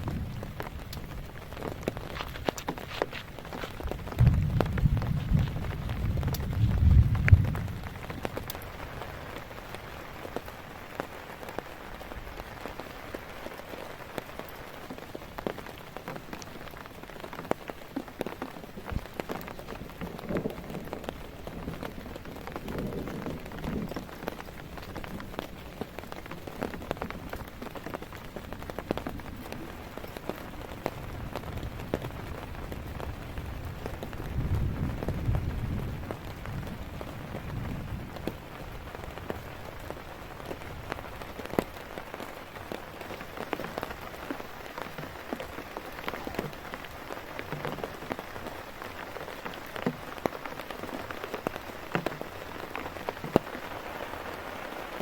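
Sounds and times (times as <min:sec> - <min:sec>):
heavy rain falling: 0:00.0 - 0:55.0
raindrops ticking on a surface: 0:00.0 - 0:55.0
low rumble: 0:03.8 - 0:08.3.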